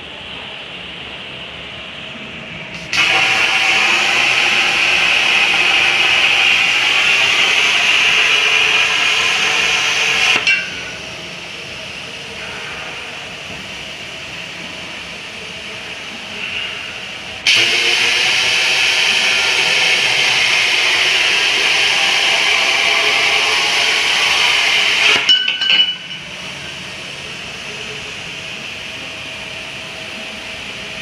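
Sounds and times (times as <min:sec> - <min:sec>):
machine cutting metal pipe: 0:02.8 - 0:11.0, 0:17.4 - 0:26.4.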